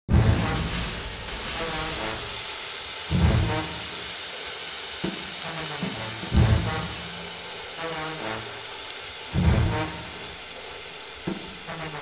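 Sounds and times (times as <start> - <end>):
food sizzling in a pan: 0.4 - 12.0.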